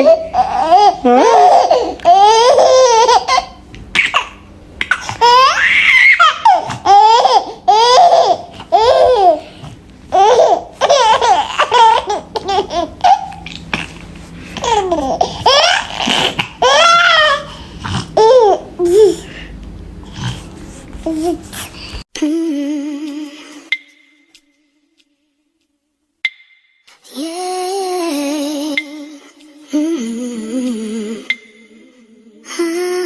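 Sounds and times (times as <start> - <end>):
child laughing: 0.0 - 13.7, 14.6 - 17.5, 18.1 - 19.4.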